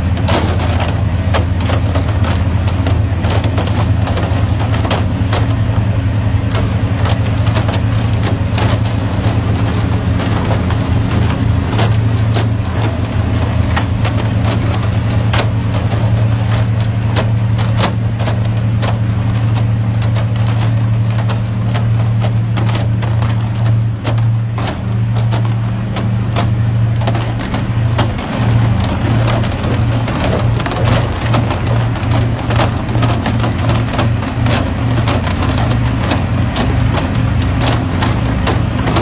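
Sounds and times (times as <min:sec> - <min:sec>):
motor humming: 0:00.0 - 0:39.0
sharp clicks and knocks: 0:00.0 - 0:39.0.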